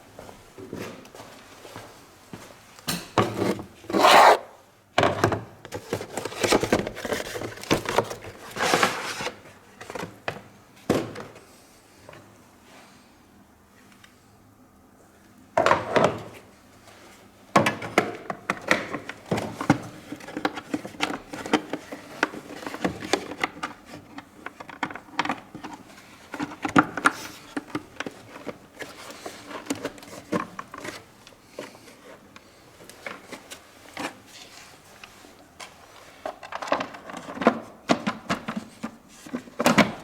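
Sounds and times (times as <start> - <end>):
plastic scraping: 3.3 - 4.4
plastic parts clicking and rattling: 18.6 - 31.0.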